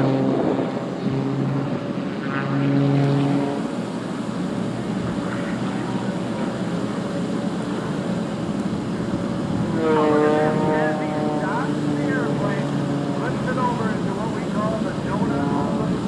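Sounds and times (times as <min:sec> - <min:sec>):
propeller plane droning overhead: 0:00.0 - 0:16.0.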